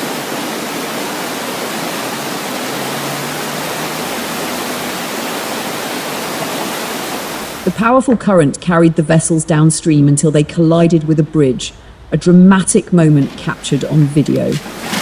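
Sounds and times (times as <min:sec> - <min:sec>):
floodwater rushing: 0:00.0 - 0:08.0, 0:13.0 - 0:15.0.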